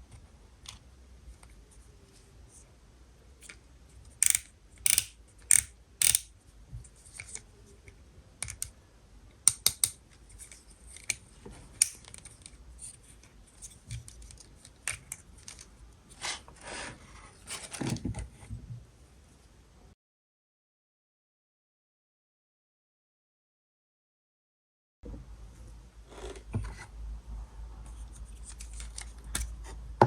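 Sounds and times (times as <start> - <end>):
plastic clicks and snaps: 9.5 - 10.0.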